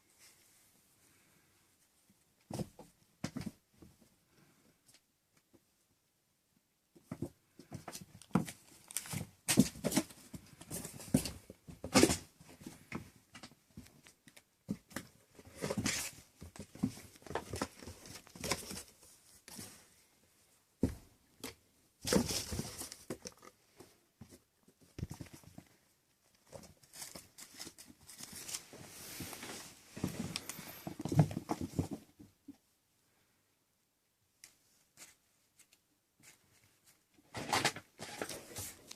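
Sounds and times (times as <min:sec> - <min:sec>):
rustling and crinkling: 0:06.9 - 0:32.6, 0:34.3 - 0:38.9.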